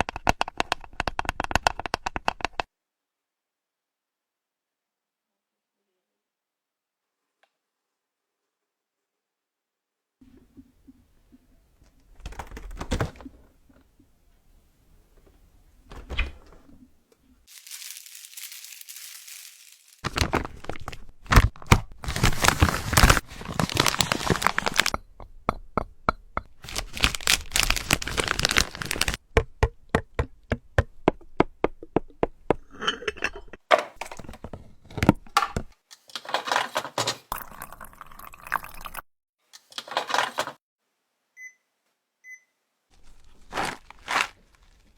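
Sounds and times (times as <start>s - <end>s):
fast evenly spaced taps: 0.0s - 2.7s
crinkling: 17.4s - 25.0s, 26.6s - 29.2s, 42.9s - 44.9s
pouring: 17.5s - 20.2s, 37.3s - 39.0s.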